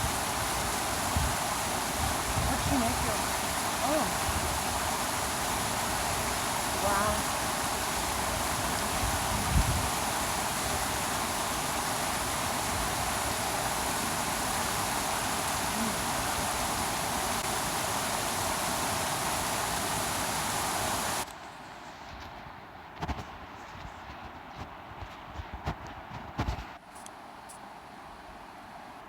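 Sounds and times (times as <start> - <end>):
flowing water: 0.0 - 21.3.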